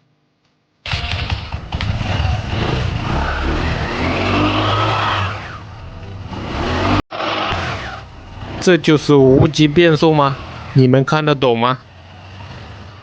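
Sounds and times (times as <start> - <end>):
scooter engine revving: 0.9 - 10.9, 11.8 - 13.0.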